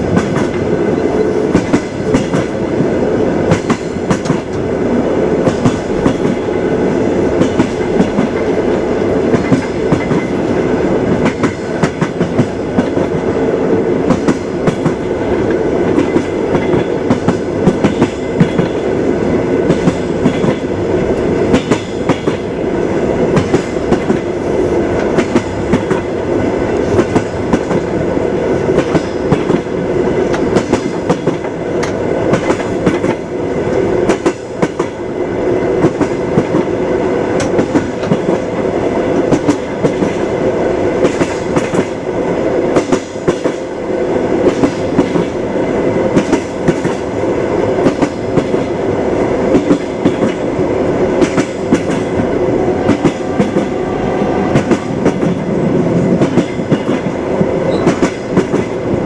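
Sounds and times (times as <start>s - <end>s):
train carriage rumble: 0.0s - 59.0s
wheels clickety-clack on rail joints: 0.0s - 59.0s.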